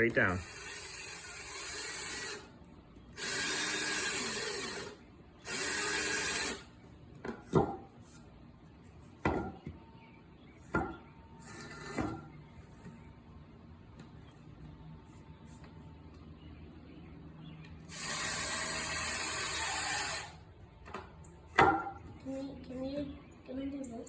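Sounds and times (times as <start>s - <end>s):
power drill boring into wood: 0.4s - 2.5s, 3.2s - 6.6s, 17.9s - 20.4s.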